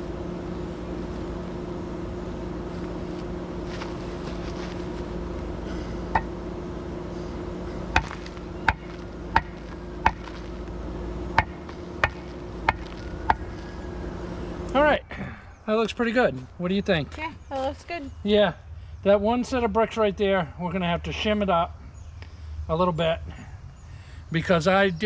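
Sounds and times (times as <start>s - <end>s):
steady low hum: 0.0s - 25.0s
hard tool tapping on bricks: 7.9s - 10.4s, 11.4s - 13.5s.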